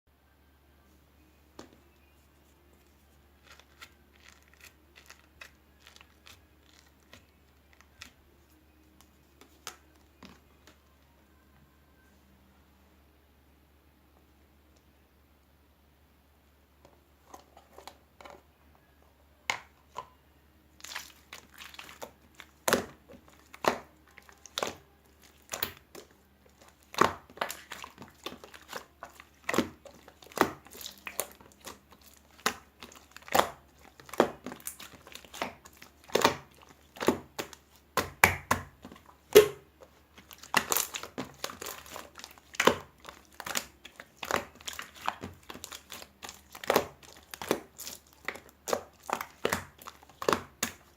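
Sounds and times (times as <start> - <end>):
crinkling and crumpling: 1.6 - 10.9, 20.8 - 50.9.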